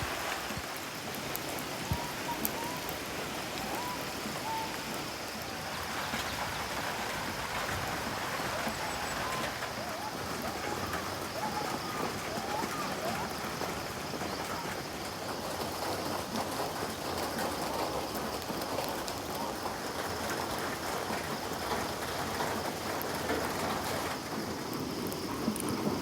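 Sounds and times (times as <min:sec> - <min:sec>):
heavy rain falling: 0:00.0 - 0:26.0.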